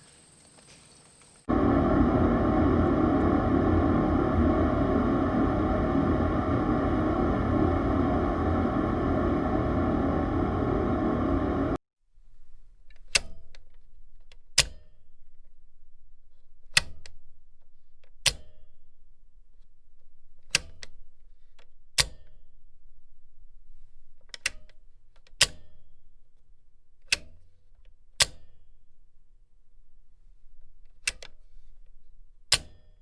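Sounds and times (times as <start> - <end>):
faint low hum: 1.5 - 11.8.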